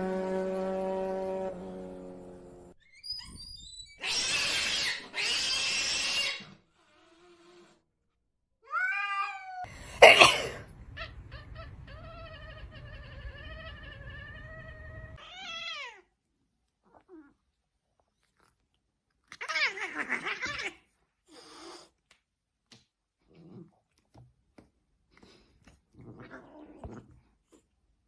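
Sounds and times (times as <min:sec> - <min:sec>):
cat meowing: 0:08.6 - 0:09.7, 0:10.9 - 0:16.1
cat yowling: 0:08.6 - 0:09.7, 0:10.9 - 0:16.1
cat hissing: 0:19.4 - 0:22.0.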